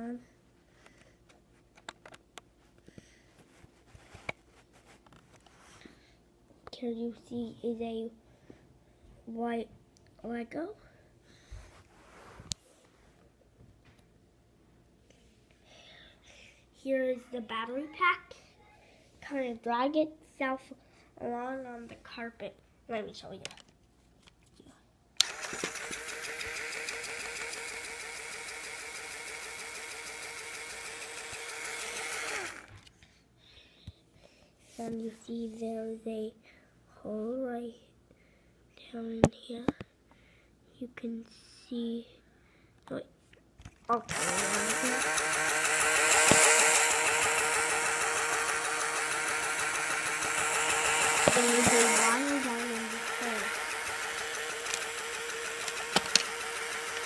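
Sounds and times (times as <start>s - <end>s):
motor switch click: 25.2s - 32.7s, 44.1s - 57.0s
small electric motor whining: 25.2s - 32.9s, 44.1s - 57.0s.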